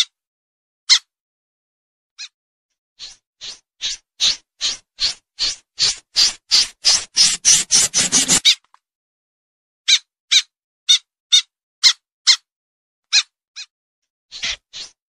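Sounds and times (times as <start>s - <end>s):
snipe calling: 4.2s - 8.5s.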